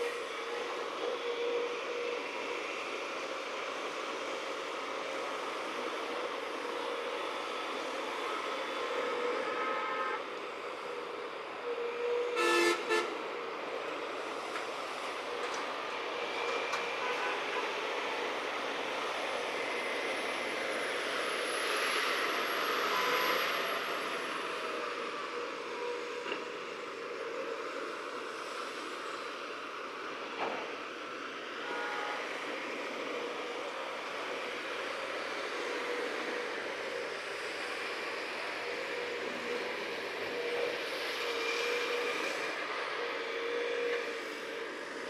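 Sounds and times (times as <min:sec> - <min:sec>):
engines and traffic rumble: 0:00.0 - 0:45.0
heavy construction machinery running: 0:00.0 - 0:45.0
vehicle horn honking: 0:12.3 - 0:13.1.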